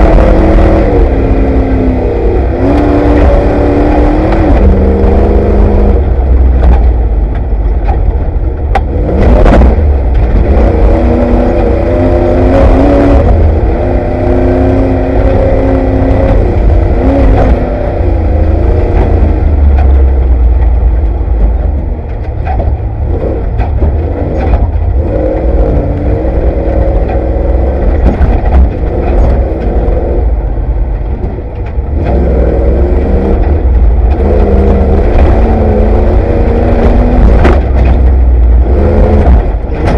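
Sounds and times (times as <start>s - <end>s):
off-road vehicle engine revving: 0.0s - 39.9s
knocks and rattles: 6.4s - 10.9s, 18.6s - 30.3s, 33.2s - 39.9s.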